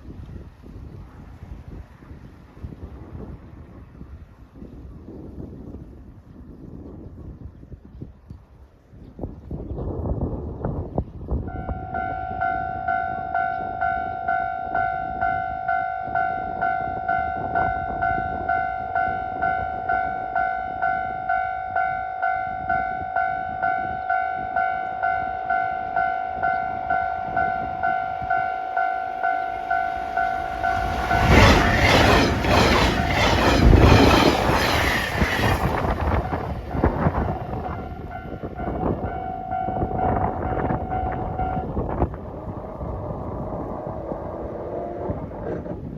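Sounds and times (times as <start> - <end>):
train passing at speed: 26.0 - 45.4
wheels clattering over rail joints: 28.8 - 37.9.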